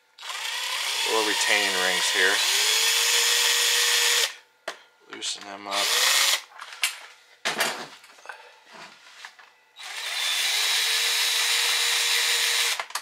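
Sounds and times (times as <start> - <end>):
power drill whining: 0.2 - 4.4, 5.7 - 6.5, 9.8 - 13.0.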